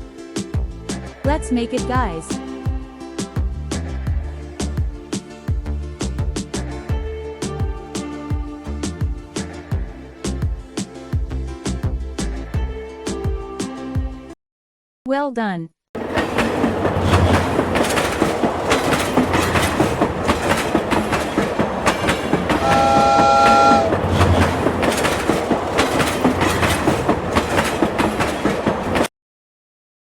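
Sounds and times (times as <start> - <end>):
train wheels clattering on rails: 16.0 - 29.1
multi-tone train horn: 22.4 - 24.6.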